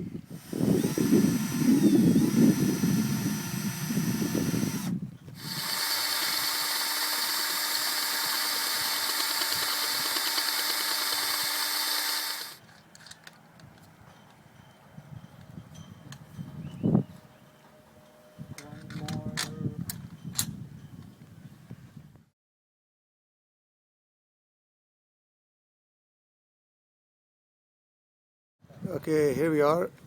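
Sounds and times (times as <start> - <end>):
power drill whining: 0.3 - 12.6.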